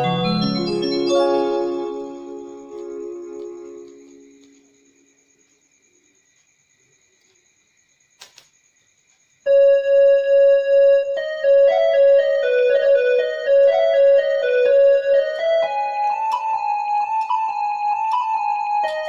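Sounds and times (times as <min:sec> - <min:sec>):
electronic keyboard melody: 0:00.0 - 0:04.8, 0:09.5 - 0:19.0.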